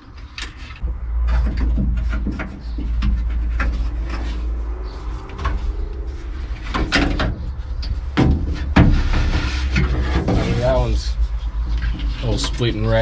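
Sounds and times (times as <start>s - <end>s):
steady low rumble: 0.7s - 13.0s.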